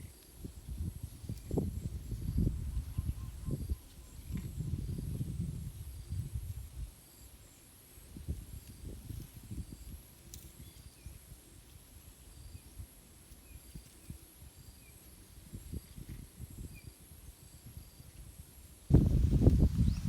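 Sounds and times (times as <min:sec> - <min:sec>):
wind buffeting microphone: 0:00.5 - 0:06.9, 0:18.9 - 0:20.0.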